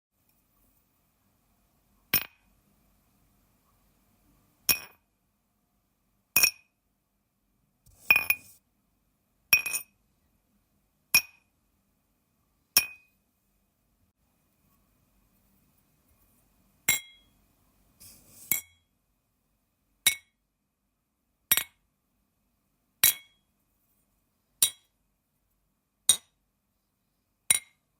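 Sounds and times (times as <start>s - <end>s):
glass clinking: 8.1s - 8.5s, 9.6s - 9.9s, 16.9s - 17.3s.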